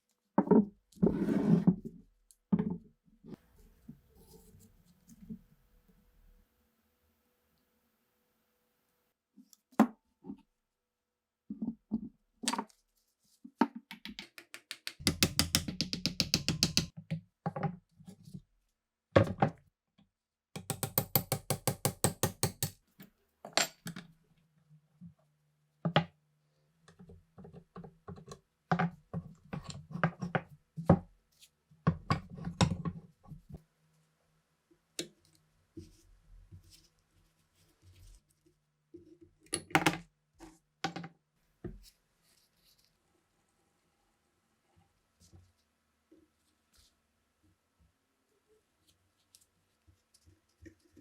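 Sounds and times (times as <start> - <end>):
tool knocks and clicks: 14.0 - 16.9.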